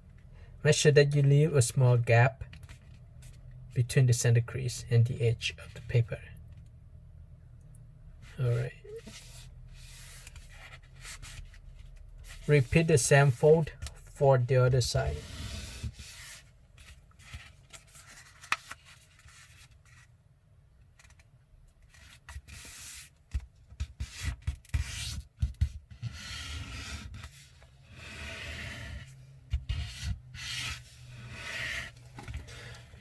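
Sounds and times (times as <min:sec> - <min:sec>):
paper being folded: 0:15.4 - 0:20.1
fingers rubbing paper fold: 0:21.9 - 0:33.0.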